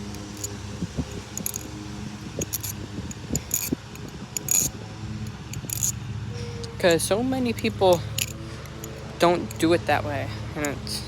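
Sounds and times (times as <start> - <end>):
butterfly knife metallic clicks: 0.0 - 1.8, 2.4 - 6.0, 7.5 - 9.8.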